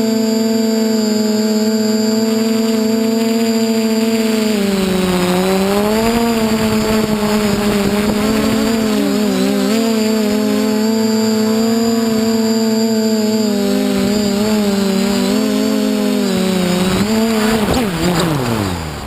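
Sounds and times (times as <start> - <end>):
drone motors buzzing: 0.0 - 19.0.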